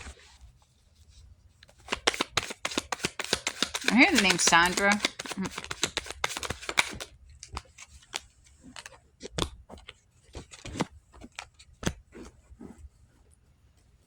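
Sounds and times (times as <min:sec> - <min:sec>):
cards being shuffled: 0:01.6 - 0:12.8.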